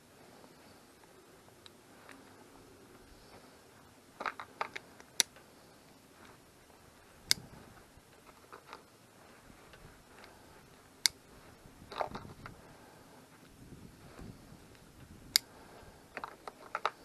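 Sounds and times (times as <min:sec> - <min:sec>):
faint ticks: 0:00.9 - 0:03.5, 0:07.2 - 0:08.9
small clicks and rattles: 0:04.2 - 0:05.6, 0:08.1 - 0:09.0, 0:11.9 - 0:12.6, 0:14.7 - 0:17.0.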